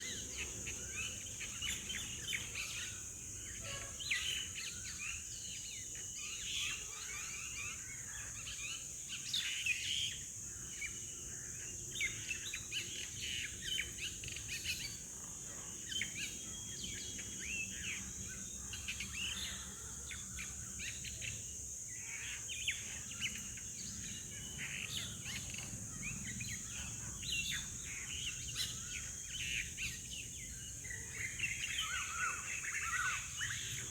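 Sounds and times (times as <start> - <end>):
birds chirping and calling: 22.1 - 33.9.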